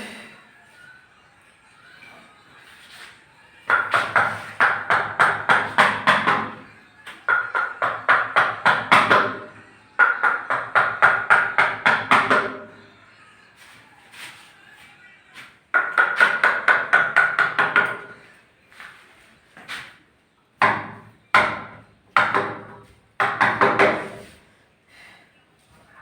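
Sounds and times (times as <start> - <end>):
hammer strikes: 3.7 - 6.6.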